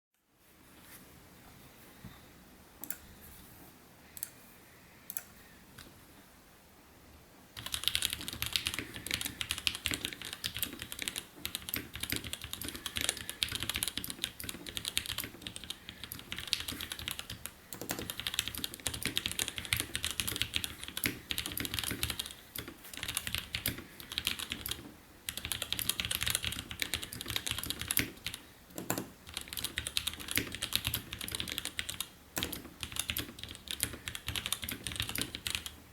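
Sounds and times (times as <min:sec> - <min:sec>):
fast typing on mechanical keyboard: 0:07.6 - 0:35.8.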